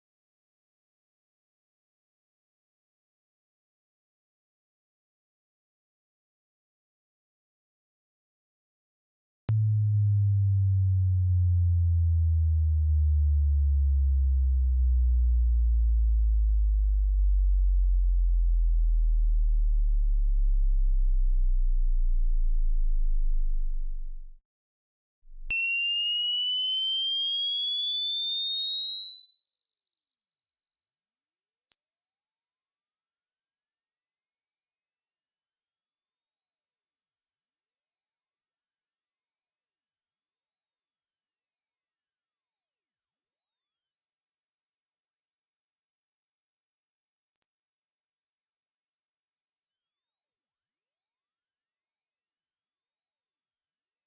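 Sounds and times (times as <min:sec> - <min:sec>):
low sine tone sliding down: 0:09.5 - 0:24.4, 0:25.3 - 0:25.6.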